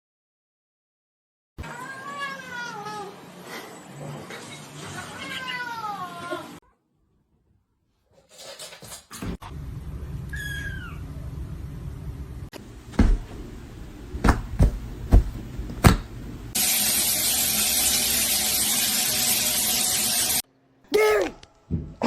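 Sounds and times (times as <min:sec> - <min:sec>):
low hum: 0:09.4 - 0:14.2
cat meow: 0:10.3 - 0:11.0.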